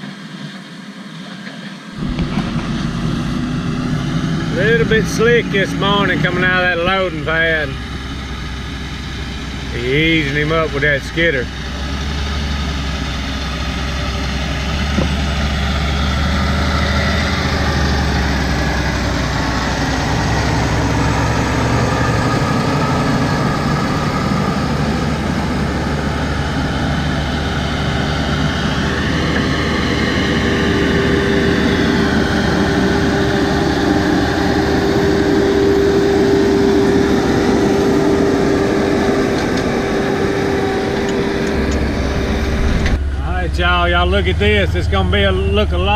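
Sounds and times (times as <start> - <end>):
diesel engine running: 0.0 - 45.9
steady whine: 0.0 - 45.9.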